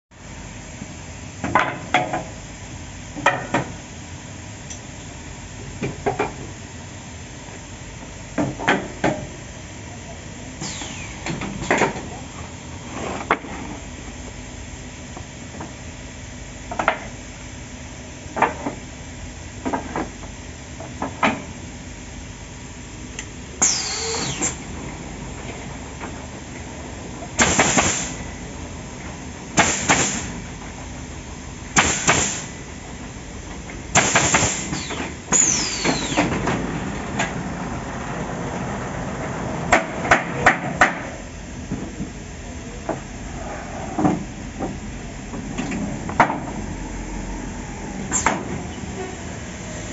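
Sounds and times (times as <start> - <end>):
steady machine hum: 0.1 - 49.9
air hissing: 10.6 - 11.5, 23.6 - 24.7, 27.4 - 28.3, 31.8 - 32.6, 33.9 - 36.4
falling whistle: 23.6 - 24.4, 34.8 - 36.2.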